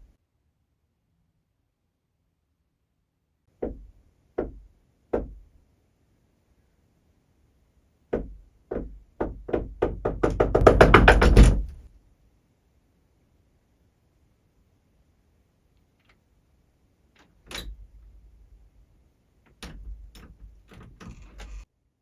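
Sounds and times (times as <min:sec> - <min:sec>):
knocking and loud pounding: 0:03.6 - 0:04.6, 0:05.2 - 0:05.4, 0:08.1 - 0:11.9.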